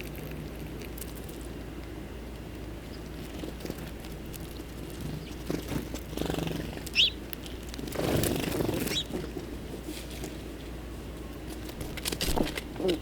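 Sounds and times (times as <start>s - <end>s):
low background rumble: 0.0s - 13.0s
bird chip call: 6.9s - 7.2s.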